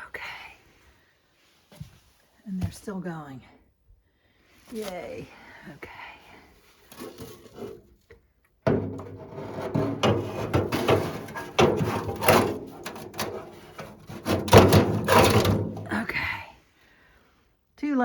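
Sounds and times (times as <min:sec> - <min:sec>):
handling knocks and rubbing: 0:06.9 - 0:07.9, 0:08.7 - 0:16.2.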